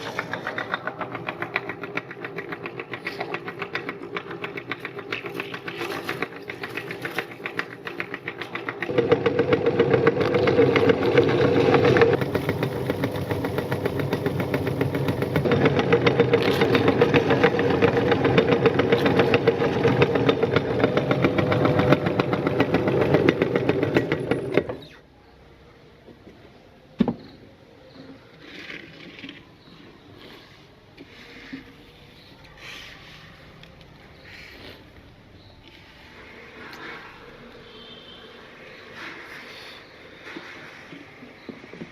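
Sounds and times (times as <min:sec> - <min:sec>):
electric meat grinder running: 0:08.9 - 0:24.6.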